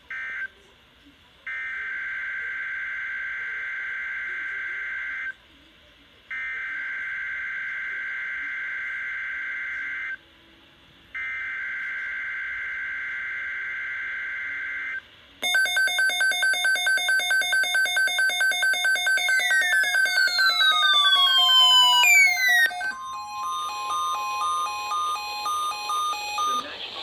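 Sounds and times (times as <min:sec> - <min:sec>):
buzzing digital data tones: 0:15.4 - 0:26.7
pulsing electronic alert tone: 0:15.4 - 0:26.7.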